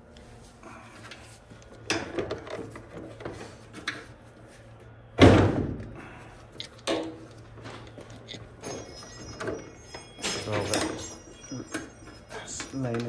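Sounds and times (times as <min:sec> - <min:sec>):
knocks and clunks of panels: 0:05.2 - 0:06.0.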